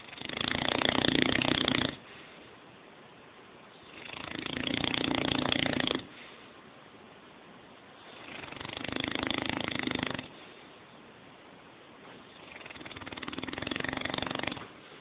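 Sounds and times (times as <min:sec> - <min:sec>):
dog snoring: 0:00.0 - 0:02.1, 0:03.8 - 0:06.3, 0:08.0 - 0:10.4, 0:12.2 - 0:14.8
dog breathing quietly: 0:04.8 - 0:06.7.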